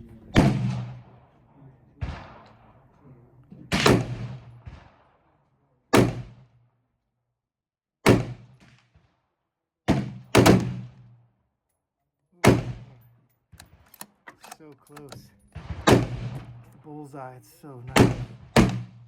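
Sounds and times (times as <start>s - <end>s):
rifle shots with echo: 0.2s - 3.0s, 3.6s - 6.6s, 8.0s - 9.1s, 9.9s - 11.2s, 12.4s - 13.0s, 13.6s - 19.0s.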